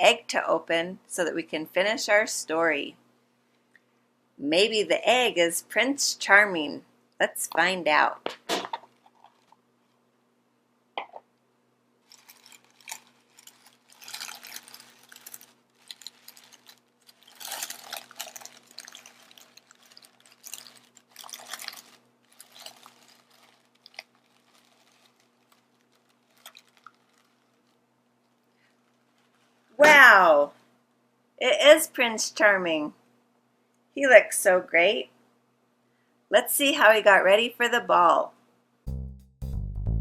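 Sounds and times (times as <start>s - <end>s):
wrapping rustling and tearing: 8.8s - 10.0s, 12.0s - 29.8s.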